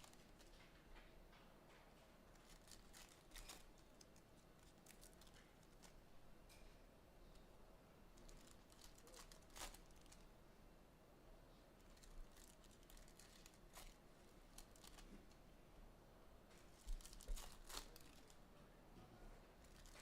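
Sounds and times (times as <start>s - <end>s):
foil packs rustling and crinkling: 2.3s - 6.0s, 8.2s - 10.2s, 11.8s - 15.4s, 16.7s - 18.4s, 19.6s - 20.0s.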